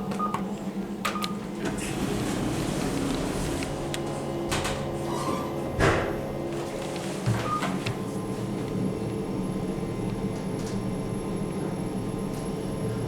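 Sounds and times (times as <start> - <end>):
elevator button beep: 0.0 - 1.4, 7.4 - 7.8
elevator mechanical hum: 0.0 - 13.0.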